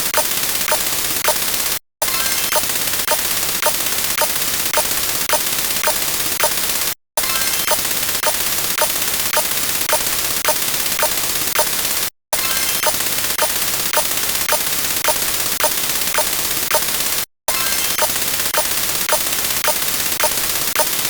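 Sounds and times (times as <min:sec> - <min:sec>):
sharp clicks: 0:12.6 - 0:16.9.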